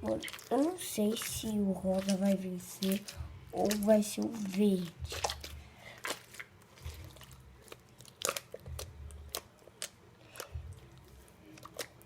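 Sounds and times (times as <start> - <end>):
slime squeezed by hand: 0.1 - 12.0
soft low thumps: 10.5 - 11.2.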